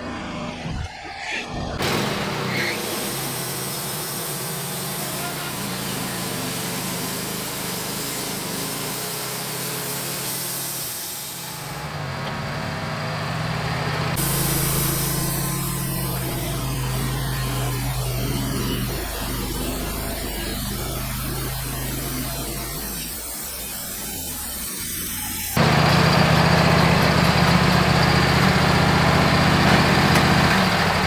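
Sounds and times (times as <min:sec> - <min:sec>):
band saw cutting log: 0:01.8 - 0:31.0
engine hum: 0:11.4 - 0:22.9, 0:25.6 - 0:31.0.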